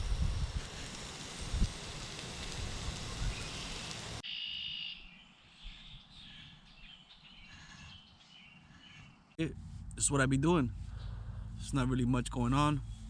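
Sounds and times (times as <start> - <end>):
food sizzling in a pan: 0.0 - 4.2
wind buffeting microphone: 0.0 - 4.2
faint bird chirps: 3.2 - 9.3.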